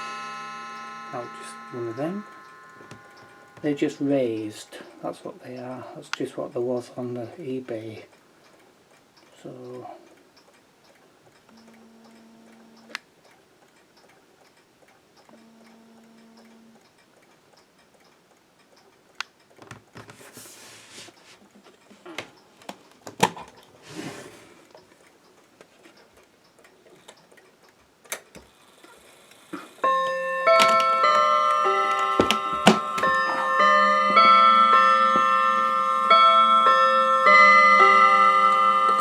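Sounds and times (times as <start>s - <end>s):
mantel clock ticking: 0.0s - 19.6s.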